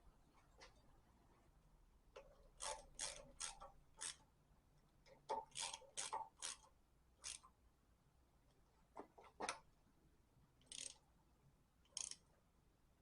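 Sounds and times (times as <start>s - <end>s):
socket ratchet wrench clicking: 2.6s - 4.2s, 5.4s - 7.5s, 10.7s - 11.0s, 11.9s - 12.2s.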